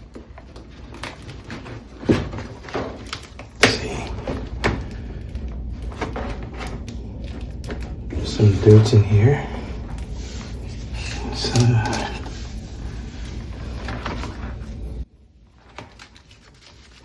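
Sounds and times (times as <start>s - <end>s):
knocks and scrapes of dryer duct: 0.0s - 7.2s.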